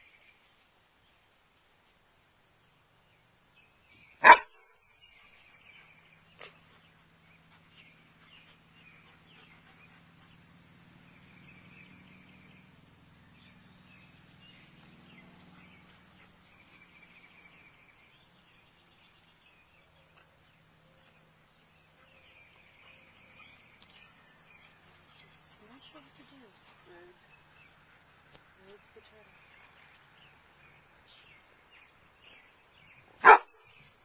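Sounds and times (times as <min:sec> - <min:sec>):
dog barking: 0:04.2 - 0:04.6, 0:33.2 - 0:33.5.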